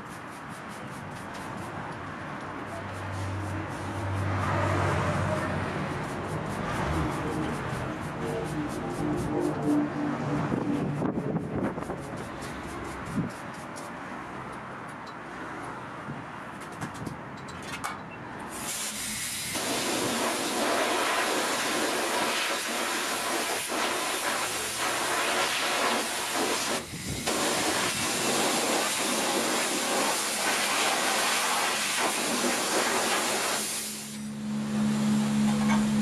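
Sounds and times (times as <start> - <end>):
water jet spraying: 18.5 - 34.3.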